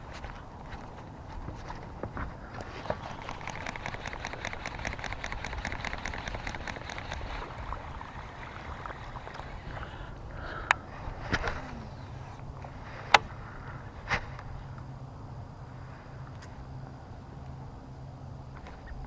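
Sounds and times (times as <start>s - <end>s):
steady low rumble: 0.0s - 19.0s
fast even ticking: 3.1s - 9.6s.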